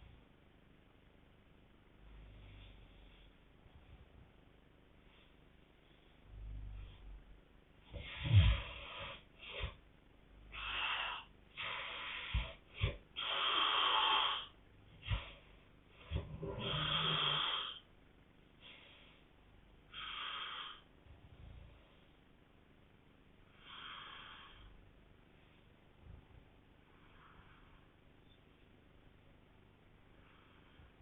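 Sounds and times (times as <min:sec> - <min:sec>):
breathing: 0:02.0 - 0:04.2, 0:05.0 - 0:07.2, 0:18.6 - 0:22.3, 0:23.4 - 0:28.7, 0:29.8 - 0:31.0
people snoring: 0:07.9 - 0:09.8, 0:10.5 - 0:15.4, 0:16.0 - 0:17.8.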